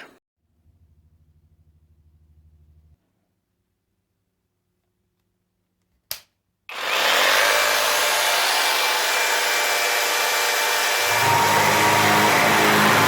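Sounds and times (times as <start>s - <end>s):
jigsaw sawing through wood: 6.7s - 13.0s.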